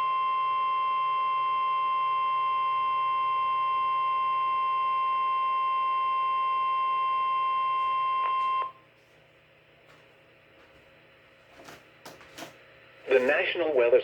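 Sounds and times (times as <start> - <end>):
steady warning alarm tone: 0.0 - 8.8
faint radio hiss: 9.9 - 14.0.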